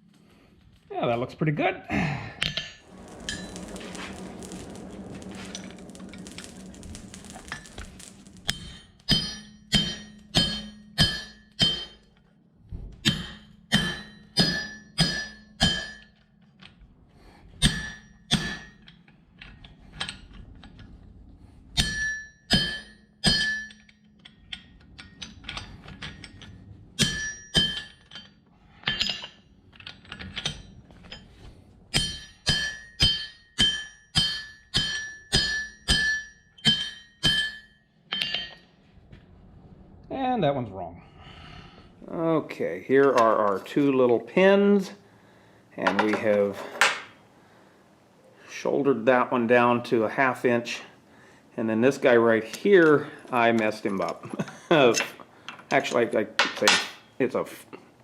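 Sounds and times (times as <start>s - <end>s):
steady hiss with low hum: 0.0s - 11.2s, 38.2s - 58.0s
hammer ringing on anvil: 8.0s - 12.1s, 13.0s - 16.2s, 21.8s - 24.0s, 27.0s - 28.0s, 31.9s - 38.6s.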